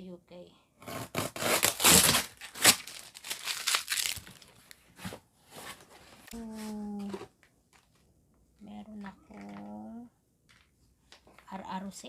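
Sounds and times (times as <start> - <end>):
packaging tearing and rustling: 1.0 - 4.8.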